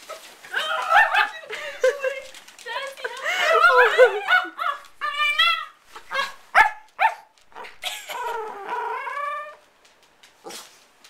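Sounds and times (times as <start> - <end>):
puppy whining and yipping: 4.6 - 9.7.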